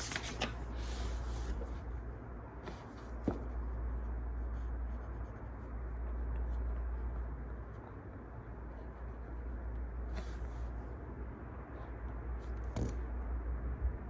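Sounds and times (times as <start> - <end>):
pen scratching on paper: 4.0 - 10.7.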